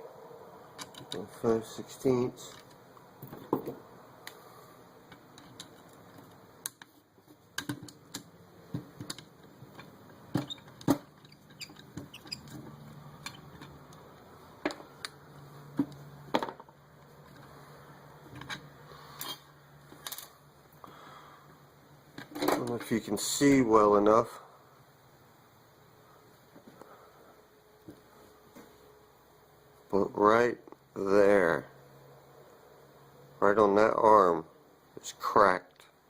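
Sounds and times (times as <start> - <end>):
metal tools clicking and tapping: 9.0 - 14.0.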